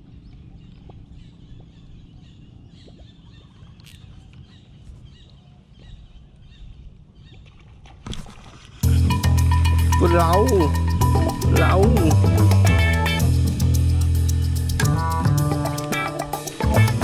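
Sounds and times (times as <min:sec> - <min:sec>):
low rumble: 0:08.8 - 0:15.9.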